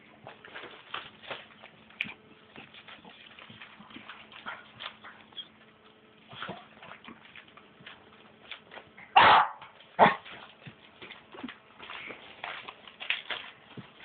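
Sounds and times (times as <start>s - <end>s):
newspaper rustling: 0.0s - 9.1s, 9.7s - 14.0s
puppy barking: 9.1s - 10.4s.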